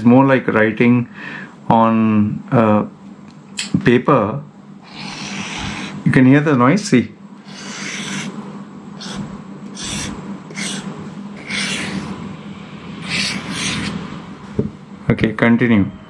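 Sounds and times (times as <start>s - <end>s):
stylus scratching on screen: 4.8s - 6.0s, 7.4s - 8.4s, 9.0s - 12.2s, 13.0s - 14.1s.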